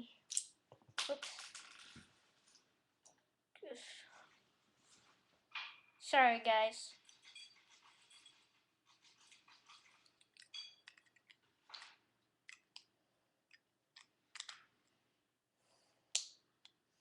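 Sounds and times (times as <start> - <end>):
toy parts clicking into place: 14.0 - 14.6.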